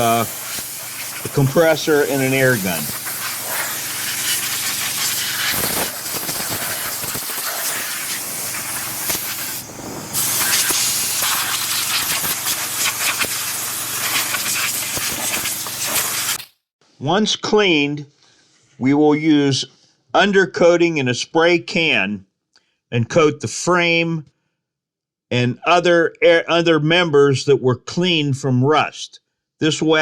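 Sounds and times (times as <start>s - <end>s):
compressed air gun hissing: 0.0s - 16.5s.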